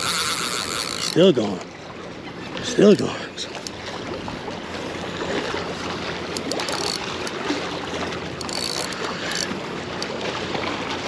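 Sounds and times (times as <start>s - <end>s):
fishing reel ratchet clicking: 0.0s - 1.2s, 6.3s - 7.4s, 8.4s - 10.1s
water and surf: 0.0s - 11.0s.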